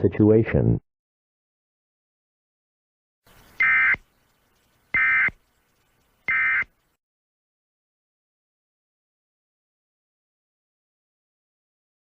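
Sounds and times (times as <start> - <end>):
digital data tone bursts: 3.3 - 6.8.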